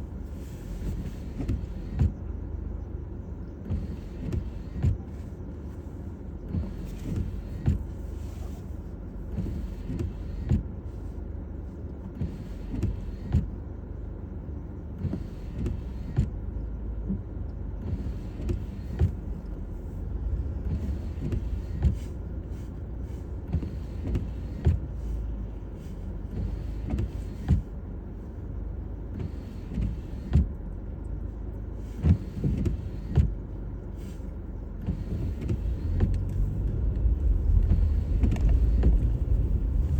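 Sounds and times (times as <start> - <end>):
tyres and engine rumble: 0.0 - 39.9
car knocks and bumps: 29.2 - 30.6, 32.0 - 33.5, 34.8 - 39.9.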